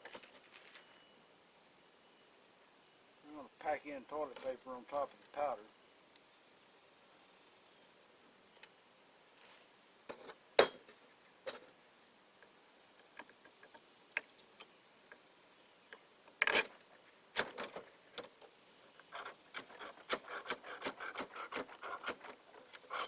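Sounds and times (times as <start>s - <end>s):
rubbing and scraping: 18.9s - 23.0s.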